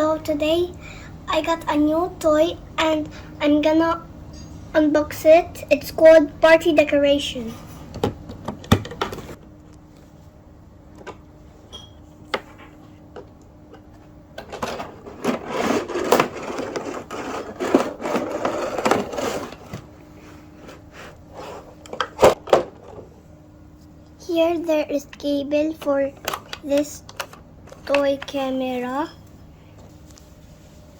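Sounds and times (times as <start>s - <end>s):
packaging rustling and scraping: 14.6s - 21.8s.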